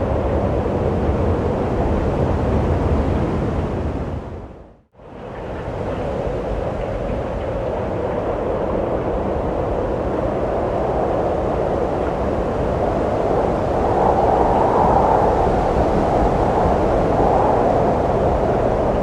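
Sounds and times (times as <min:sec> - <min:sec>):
wind blowing: 0:06.2 - 0:19.0.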